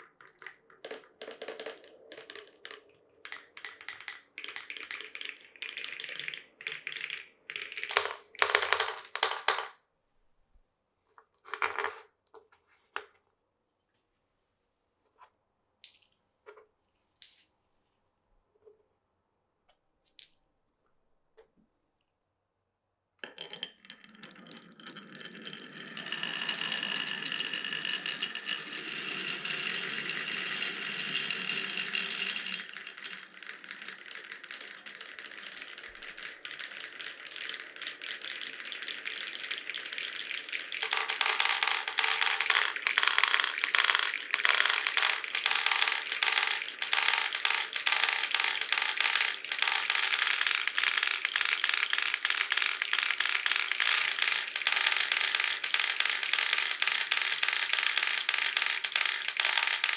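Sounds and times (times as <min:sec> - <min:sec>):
marbles clattering down wooden run: 0:00.0 - 0:09.8, 0:23.2 - 0:59.9.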